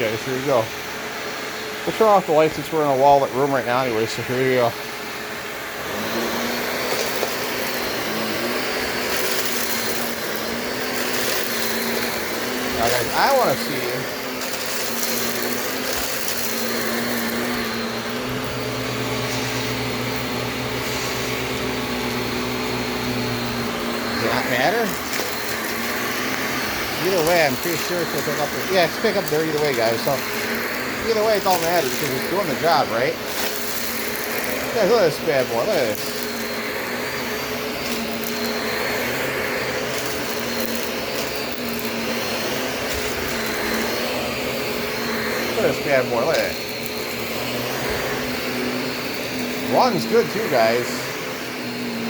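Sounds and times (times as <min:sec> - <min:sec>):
vacuum cleaner running: 0:00.0 - 0:52.0.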